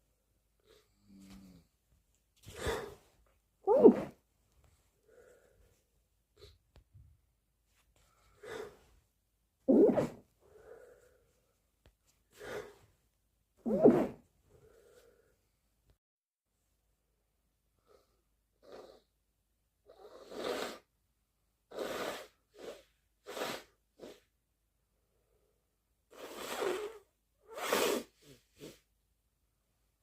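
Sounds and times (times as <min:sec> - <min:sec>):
quick breaths or sniffs: 0:02.4 - 0:03.1, 0:12.3 - 0:12.9, 0:21.7 - 0:24.3, 0:26.1 - 0:28.9
stifled muffled sneezes: 0:09.7 - 0:10.2.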